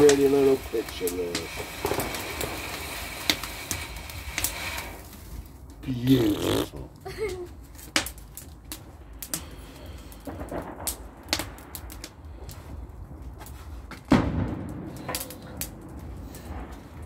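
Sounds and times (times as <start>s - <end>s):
fireworks crackling and popping: 0.0s - 17.0s
firework boom: 1.5s - 5.0s, 10.2s - 12.0s, 14.0s - 17.0s.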